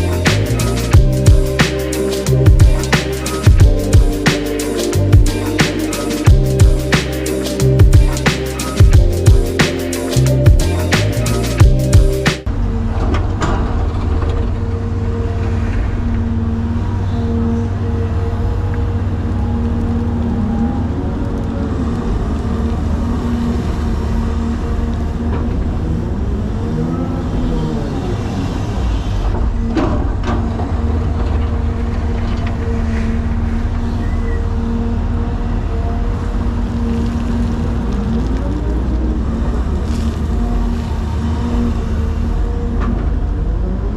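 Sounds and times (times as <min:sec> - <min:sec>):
excavator diesel engine rumbling: 0:00.0 - 0:43.9.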